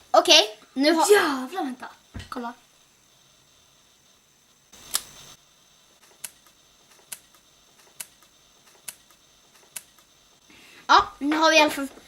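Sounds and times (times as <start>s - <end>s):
sharp click: 4.8s - 5.2s, 6.0s - 10.1s.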